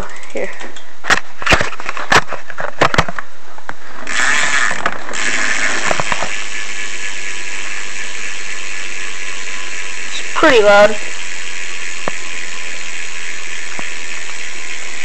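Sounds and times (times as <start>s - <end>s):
bicycle hub ratcheting: 4.0s - 15.0s.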